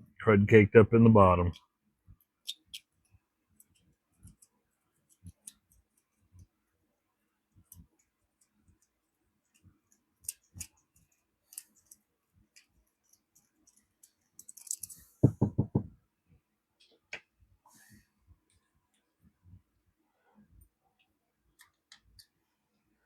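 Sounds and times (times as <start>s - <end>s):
small metal tools clicking: 9.9s - 15.1s.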